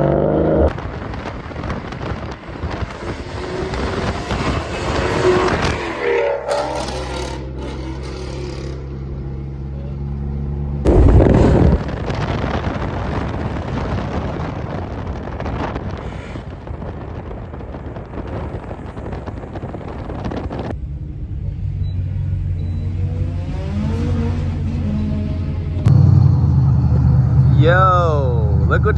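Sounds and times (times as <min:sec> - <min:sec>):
sudden loud burst: 0:10.9 - 0:12.9
car engine running: 0:23.6 - 0:28.9.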